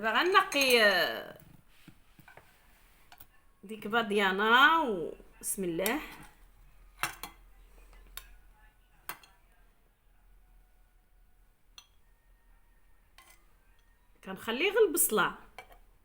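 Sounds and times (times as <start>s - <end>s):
spoon clinking against pot: 0.2s - 1.0s, 7.0s - 7.4s, 9.1s - 9.4s, 11.7s - 12.0s, 13.1s - 13.9s.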